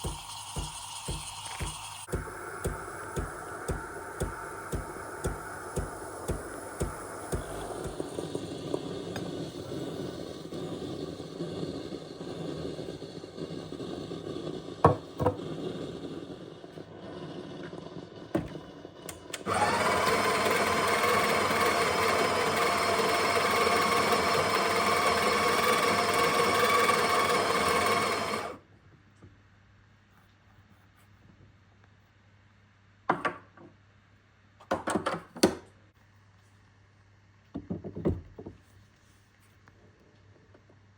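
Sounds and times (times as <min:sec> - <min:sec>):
espresso machine whirr: 0:00.0 - 0:28.6.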